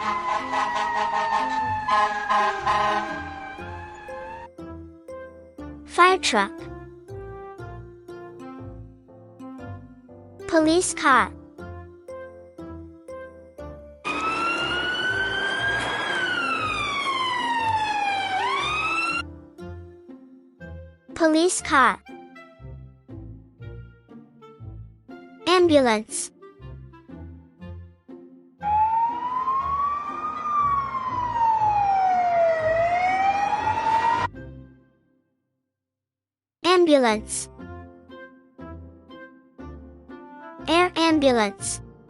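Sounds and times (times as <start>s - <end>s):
police siren wailing: 0.0s - 4.6s, 14.0s - 19.2s, 28.6s - 34.3s
light children's music: 0.0s - 35.2s, 36.7s - 42.0s.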